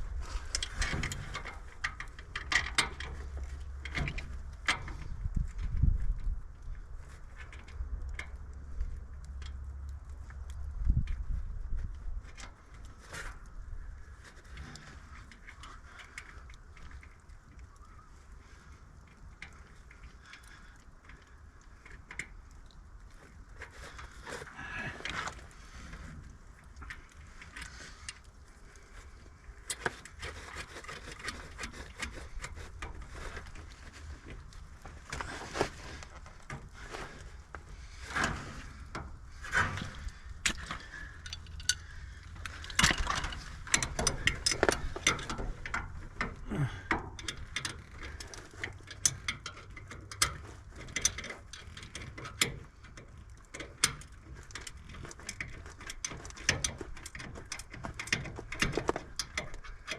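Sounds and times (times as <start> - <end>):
low steady rumble: 0.0 - 59.9
hand tools clicking and knocking: 39.5 - 52.6.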